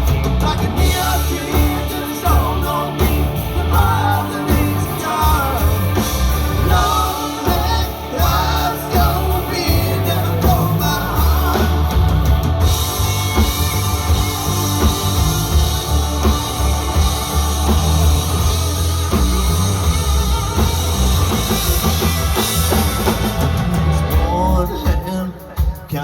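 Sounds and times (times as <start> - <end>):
heavy bass line: 0.0 - 25.1
drum kit with cymbals: 0.0 - 26.0
electric guitar: 0.0 - 26.0.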